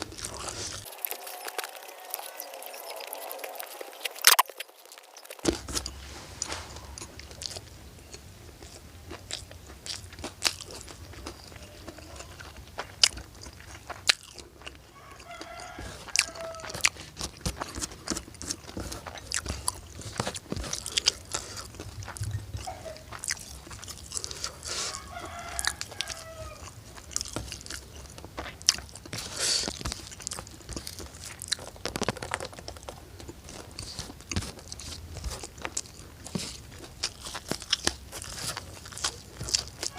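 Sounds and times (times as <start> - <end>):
crunching and chewing crisp food: 0.0 - 39.9
rooster crowing: 0.3 - 5.5, 14.7 - 17.1, 24.6 - 26.8.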